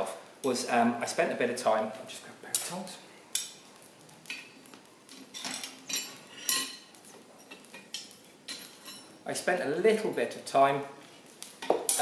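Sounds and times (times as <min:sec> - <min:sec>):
metal tongs clinking: 0:05.1 - 0:09.1.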